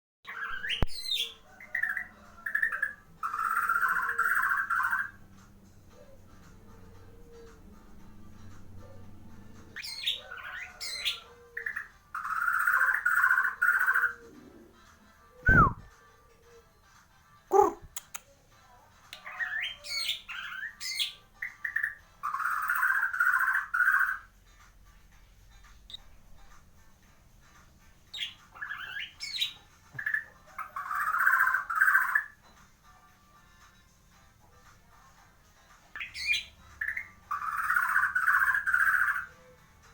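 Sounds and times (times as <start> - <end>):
bird singing whistled phrases: 0.3 - 2.8, 15.4 - 15.9
rapid bird trill: 0.3 - 5.2, 9.8 - 14.2, 19.3 - 24.3, 28.1 - 32.4, 36.0 - 39.4
bird whistling notes: 15.4 - 15.9
bird chattering: 17.5 - 18.2.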